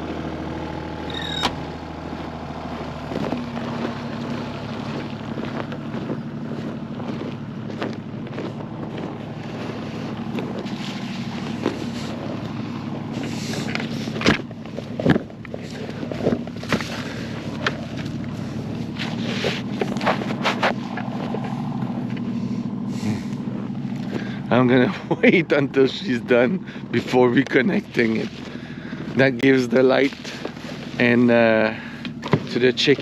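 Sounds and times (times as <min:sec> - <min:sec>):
small excavator engine running: 0:00.0 - 0:33.0
short rising squeak: 0:01.0 - 0:01.9.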